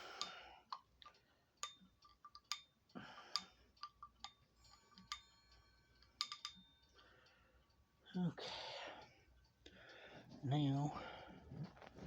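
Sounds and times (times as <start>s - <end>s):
metallic clinks of chime rods: 4.5s - 7.1s
chime rods ringing: 4.5s - 7.2s.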